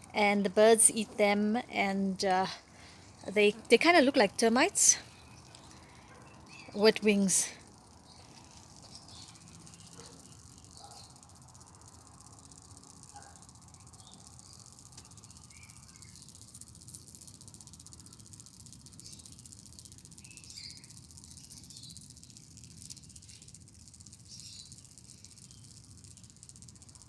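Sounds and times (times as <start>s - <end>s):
high-pitched insect chorus: 0.0s - 27.0s
short insect chirps: 2.4s - 27.0s.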